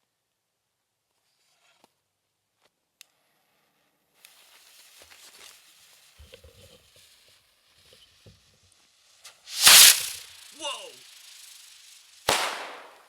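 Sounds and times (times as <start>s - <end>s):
rocket fuse hissing: 4.3s - 8.2s, 8.8s - 13.0s
rocket launch whoosh: 9.4s - 13.0s
footsteps: 9.5s - 10.2s.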